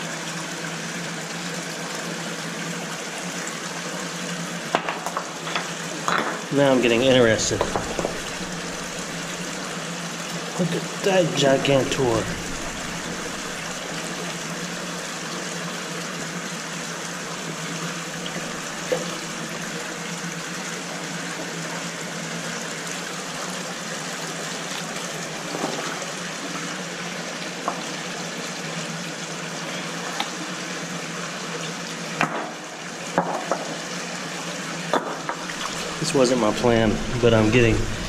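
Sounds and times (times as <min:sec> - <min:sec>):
creek water rushing: 0:00.0 - 0:38.0.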